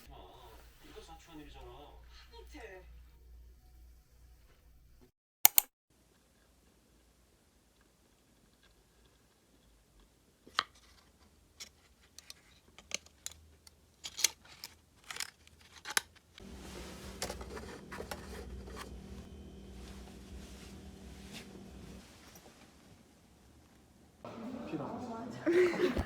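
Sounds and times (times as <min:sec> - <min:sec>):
sharp clicks and snips: 0:05.4 - 0:05.7
steady low hum with hiss: 0:16.4 - 0:26.0.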